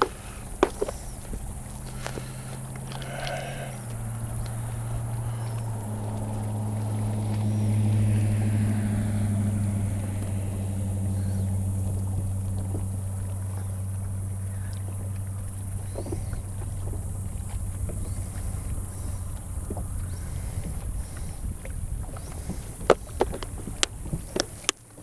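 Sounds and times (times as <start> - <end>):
outboard motor droning: 0.0 - 25.0
wind noise: 15.6 - 24.7.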